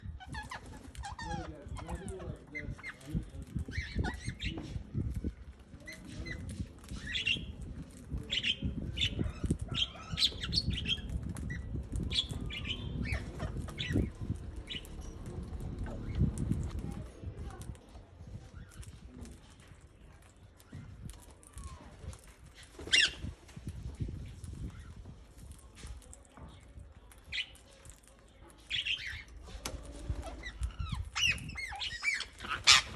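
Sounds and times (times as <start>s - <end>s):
wings flapping and rustling: 0.0s - 32.9s
parakeets chirping and squawking: 0.1s - 5.2s, 5.8s - 16.9s, 22.6s - 23.3s, 28.6s - 32.9s
parakeets calling: 8.3s - 16.2s, 30.3s - 32.9s.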